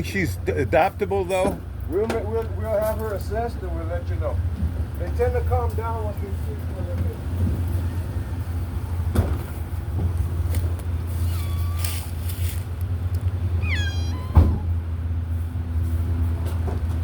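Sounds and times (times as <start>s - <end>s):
vehicle engine idling: 0.0s - 17.0s
cat meowing: 11.3s - 12.0s, 13.6s - 14.8s.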